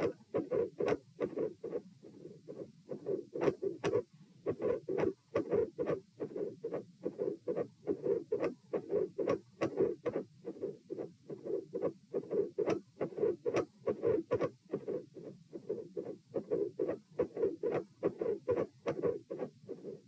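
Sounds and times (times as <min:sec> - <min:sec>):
heartbeat through stethoscope: 0:00.0 - 0:20.0.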